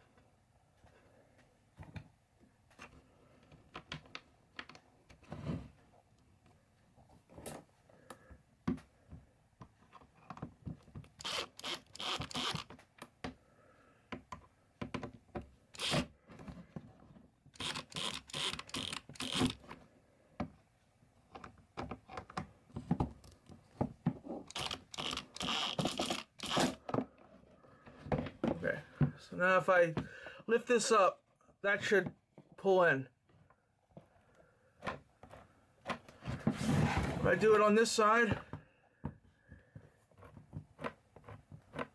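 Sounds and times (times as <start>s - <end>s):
plastic parts clicking: 17.5s - 19.7s, 24.5s - 26.8s
plastic parts scraping: 17.5s - 19.8s, 24.3s - 27.2s.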